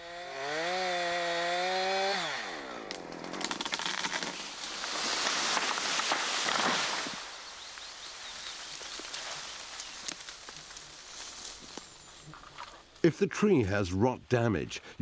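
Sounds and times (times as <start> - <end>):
chainsaw cutting: 0.0 - 7.3
rustling crackling with sharp snaps: 8.7 - 13.1.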